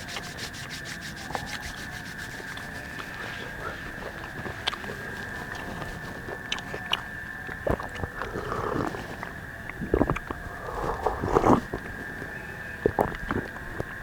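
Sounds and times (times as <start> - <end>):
handling noises: 0.0 - 7.4
steady high-pitched tone: 0.0 - 8.1
person biting and chewing food: 0.0 - 11.9.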